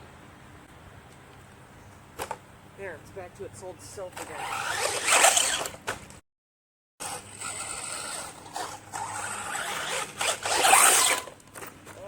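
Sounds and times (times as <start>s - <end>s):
tyres scrabbling on dirt: 7.0s - 12.0s.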